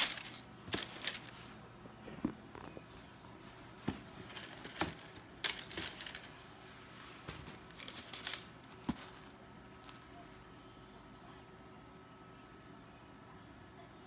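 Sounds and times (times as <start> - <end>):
packaging wrap crinkling: 0.0 - 1.5, 3.8 - 6.5, 7.1 - 10.1.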